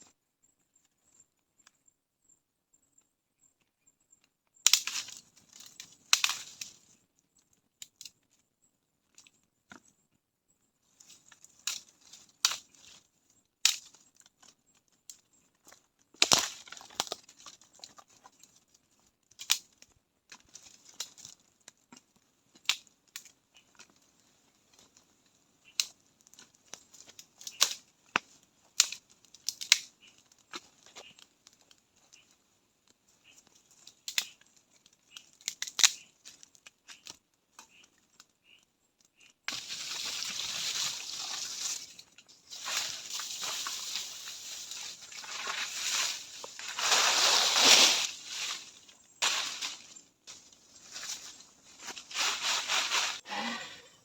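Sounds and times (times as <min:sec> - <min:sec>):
sharp crunches and cracks: 0:04.7 - 0:06.9, 0:13.6 - 0:18.7, 0:19.3 - 0:24.1, 0:24.7 - 0:53.2.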